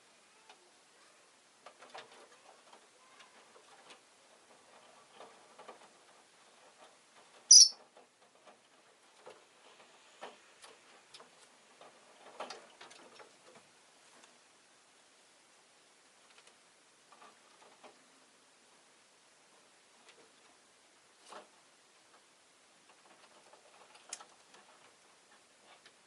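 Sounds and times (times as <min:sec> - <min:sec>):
lovebird high-pitched call: 0:07.5 - 0:07.8.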